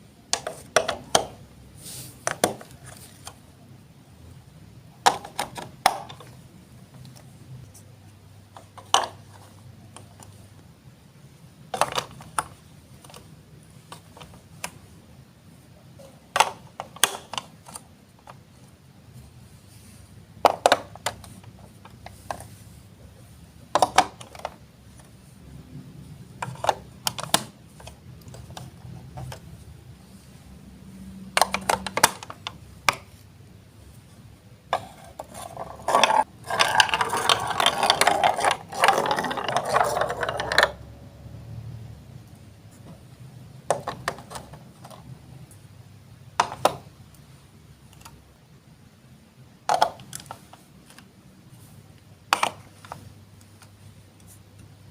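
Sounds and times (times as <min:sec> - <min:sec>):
plastic blocks clicking: 0:11.8 - 0:13.2, 0:23.7 - 0:24.6, 0:26.4 - 0:29.4, 0:31.3 - 0:33.1, 0:34.8 - 0:40.8, 0:49.7 - 0:51.0, 0:52.3 - 0:53.0
plastic rattle: 0:34.8 - 0:40.8.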